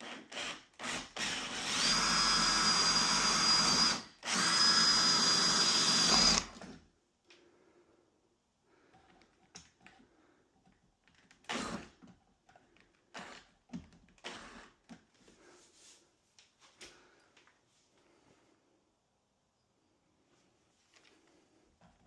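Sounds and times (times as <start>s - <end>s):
knocks and clicks of tools and wood: 8.9s - 15.2s.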